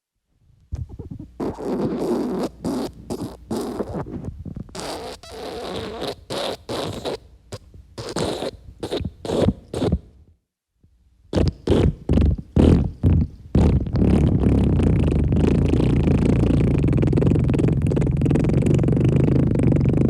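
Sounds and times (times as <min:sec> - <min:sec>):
wet fart sound effects: 0:00.8 - 0:04.2, 0:04.8 - 0:07.2, 0:11.3 - 0:20.0.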